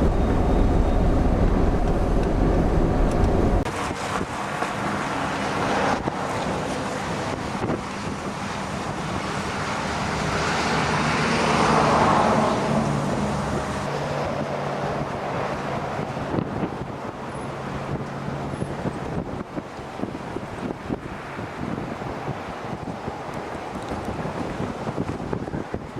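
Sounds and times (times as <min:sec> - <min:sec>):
wind blowing across microphone: 0:00.0 - 0:25.9
vehicle driving past: 0:10.0 - 0:16.5.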